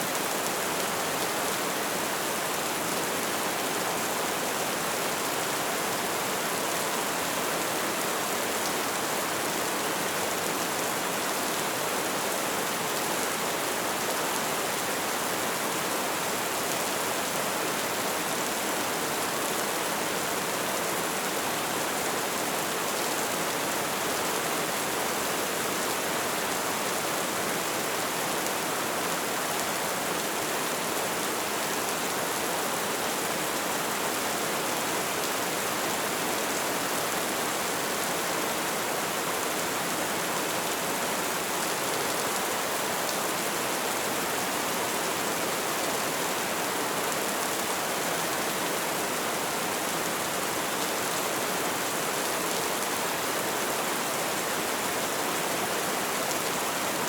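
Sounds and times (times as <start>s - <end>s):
light rain falling: 0.0s - 57.0s.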